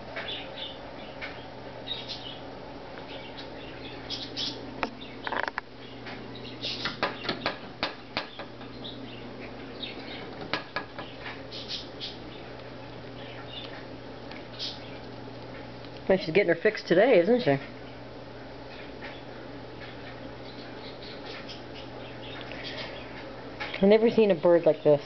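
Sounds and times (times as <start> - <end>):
bird chirping: 0.2 - 7.4, 8.4 - 10.3, 11.0 - 12.5, 19.9 - 23.2.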